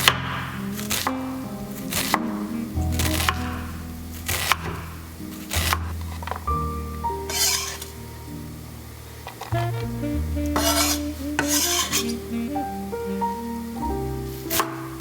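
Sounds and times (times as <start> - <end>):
soft background music: 0.0 - 15.0
utensil scraping a dish: 7.3 - 7.9, 10.6 - 12.2.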